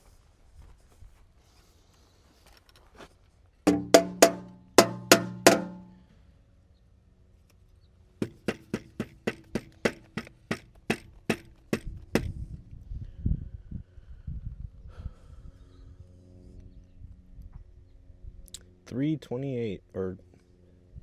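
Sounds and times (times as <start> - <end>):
knocking on hollow object: 3.7 - 5.9, 8.2 - 12.3.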